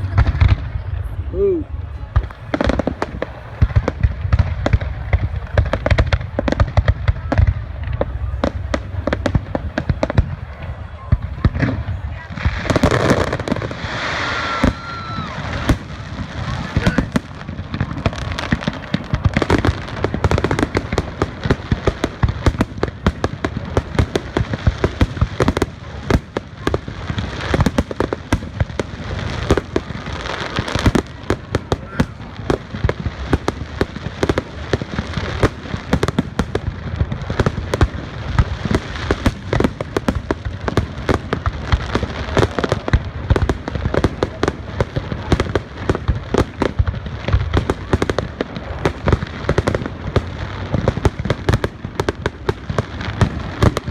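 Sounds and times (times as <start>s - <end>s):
low rumble: 0.0s - 5.4s
fireworks popping and banging: 0.0s - 53.9s.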